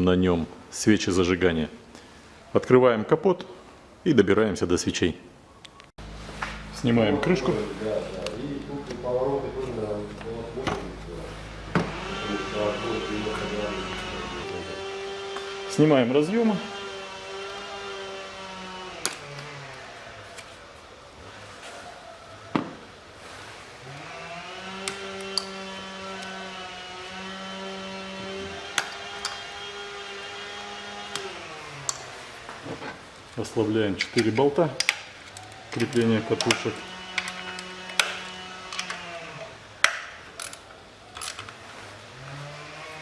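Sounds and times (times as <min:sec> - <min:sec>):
machine hum: 0:06.0 - 0:21.4, 0:23.2 - 0:33.2, 0:35.3 - 0:39.7, 0:41.7 - 0:43.0
plastic connectors clicking: 0:24.7 - 0:26.4, 0:28.7 - 0:29.6, 0:31.0 - 0:32.1, 0:34.0 - 0:41.6.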